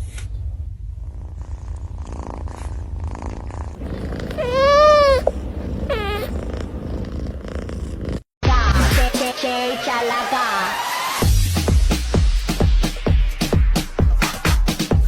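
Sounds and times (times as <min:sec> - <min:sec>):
cat purring: 0:00.9 - 0:08.3
cat meowing: 0:03.9 - 0:06.4.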